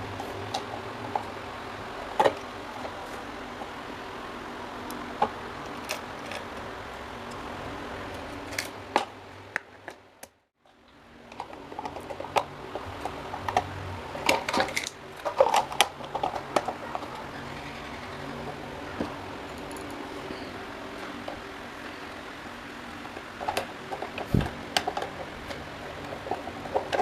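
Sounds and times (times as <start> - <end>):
small parts clicking and knocking: 11.3 - 17.1.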